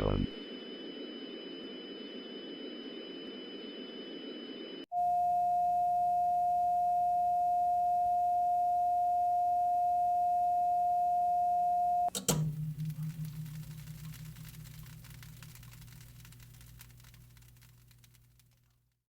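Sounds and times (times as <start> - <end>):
faint hiss with high whines: 0.0 - 5.7, 12.1 - 18.2
steady electronic sine tone: 0.0 - 16.4.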